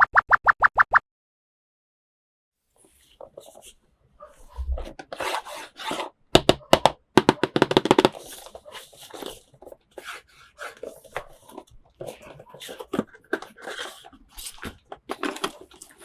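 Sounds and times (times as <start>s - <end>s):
plastic pieces rubbing and scraping: 7.2s - 16.0s.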